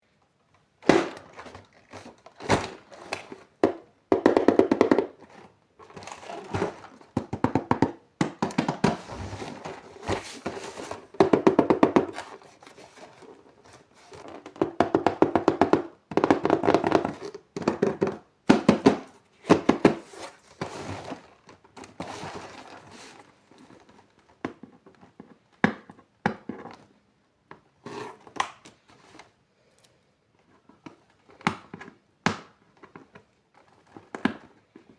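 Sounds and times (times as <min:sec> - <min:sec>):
plastic eggs knocking and rattling: 0:00.8 - 0:12.4, 0:14.1 - 0:22.8.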